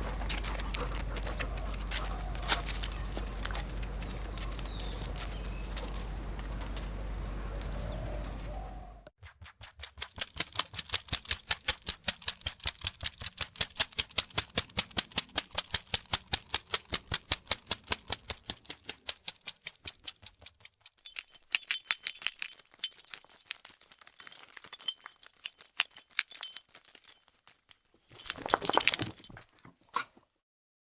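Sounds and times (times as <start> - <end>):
metallic jingle: 21.1 - 29.8.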